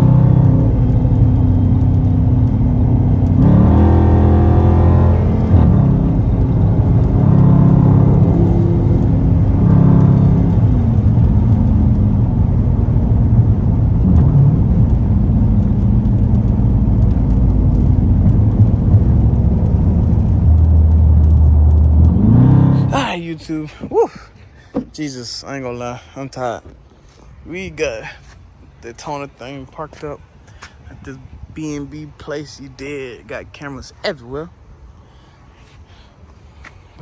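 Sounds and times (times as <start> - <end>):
car engine revving: 0.0 - 30.1.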